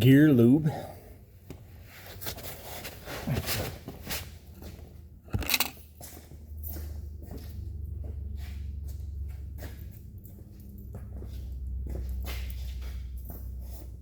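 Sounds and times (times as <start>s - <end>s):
handling clicks and rustles: 5.3s - 6.7s.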